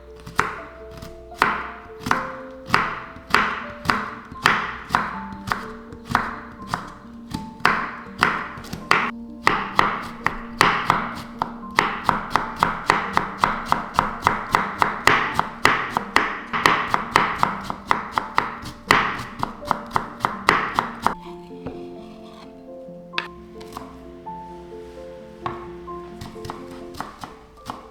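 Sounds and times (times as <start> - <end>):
background music: 0.0 - 27.9
knife chopping on cutting board: 0.2 - 22.5, 23.2 - 24.1, 25.4 - 27.9.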